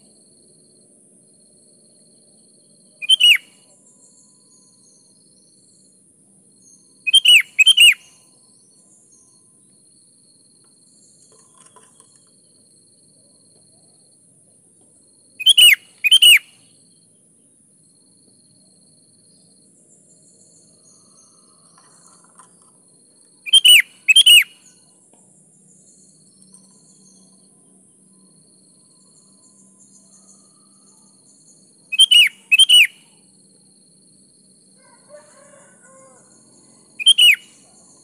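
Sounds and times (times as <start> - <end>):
bird whistled calls: 3.0 - 3.7, 7.0 - 8.3, 15.4 - 16.6, 23.4 - 24.8, 31.9 - 33.1, 37.0 - 37.8.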